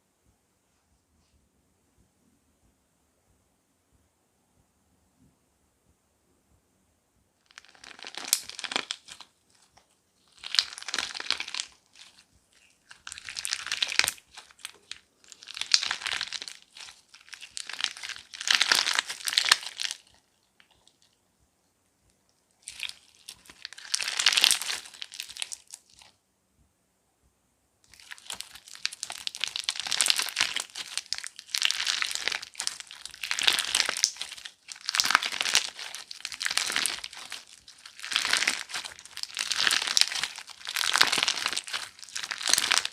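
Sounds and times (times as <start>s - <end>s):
crunchy slime crackling: 7.4s - 21.1s, 22.6s - 26.2s, 27.9s - 42.9s.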